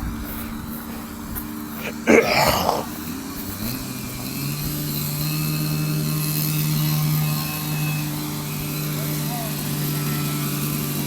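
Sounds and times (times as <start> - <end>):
toy car motor humming: 4.2 - 11.0.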